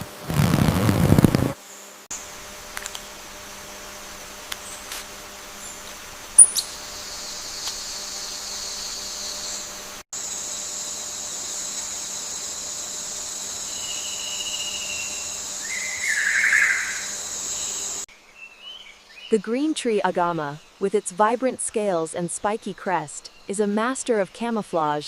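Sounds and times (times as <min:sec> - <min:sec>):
high-pitched insect buzz: 0:00.0 - 0:18.1.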